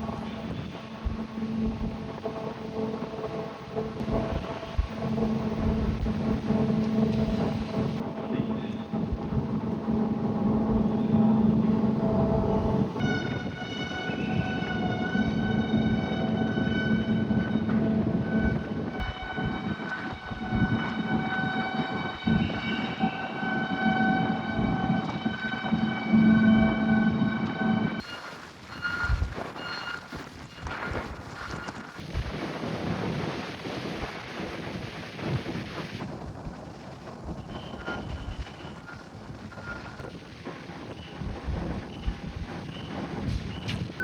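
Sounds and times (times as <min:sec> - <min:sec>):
ferry engines droning: 0:00.0 - 0:28.0
wind buffeting microphone: 0:00.0 - 0:44.0.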